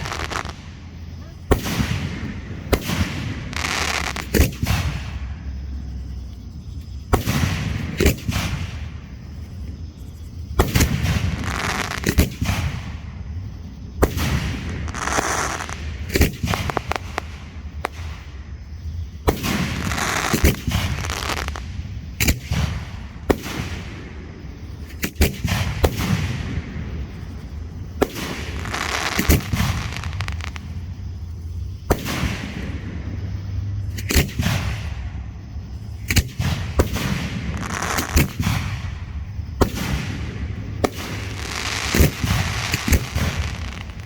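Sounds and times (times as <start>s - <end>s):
fireworks banging: 0.0s - 6.2s, 10.5s - 44.0s
fireworks hissing and crackling: 0.0s - 6.2s, 7.1s - 44.0s.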